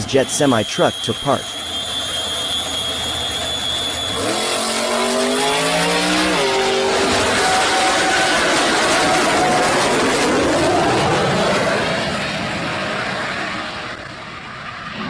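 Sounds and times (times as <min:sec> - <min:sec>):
racing engine accelerating: 0:01.8 - 0:13.0.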